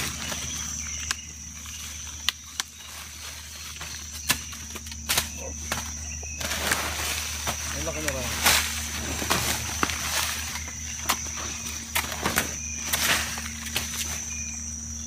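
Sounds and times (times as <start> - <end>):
low hum: 0.0 - 15.0.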